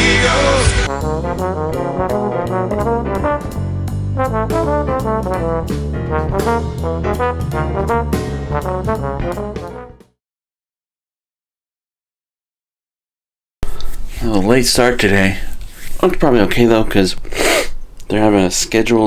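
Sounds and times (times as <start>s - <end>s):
brass band jazz tune: 0.0s - 10.2s.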